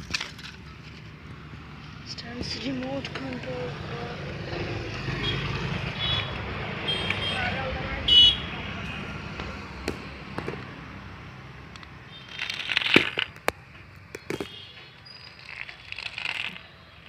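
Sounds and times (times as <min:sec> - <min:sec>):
scraping or rustling: 0:12.2 - 0:13.4, 0:15.2 - 0:16.8.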